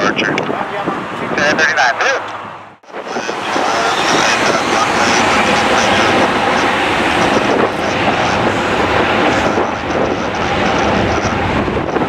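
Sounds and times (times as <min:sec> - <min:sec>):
jet airliner engines running: 0:00.0 - 0:12.0.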